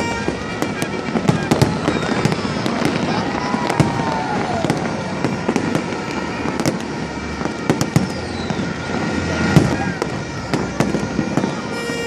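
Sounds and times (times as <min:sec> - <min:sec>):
firework whistle: 0:00.0 - 0:12.0
fireworks bangs and crackles: 0:00.0 - 0:12.0.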